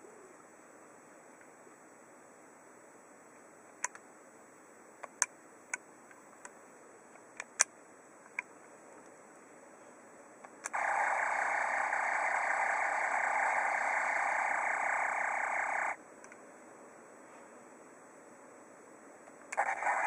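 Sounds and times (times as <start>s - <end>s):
engine-like hum from toy speaker: 10.7s - 16.0s, 19.6s - 20.0s.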